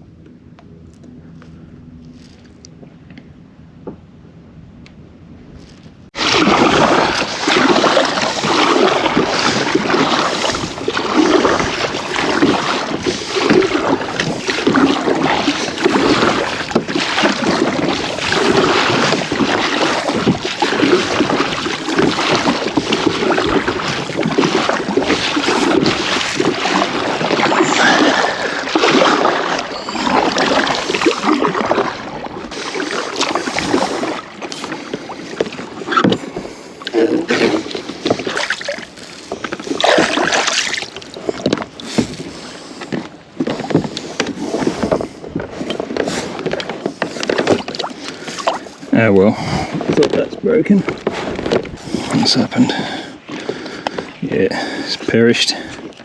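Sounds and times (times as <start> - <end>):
wind buffeting microphone: 3.8 - 38.3, 49.3 - 56.0
kayak paddle splashes: 6.1 - 56.0.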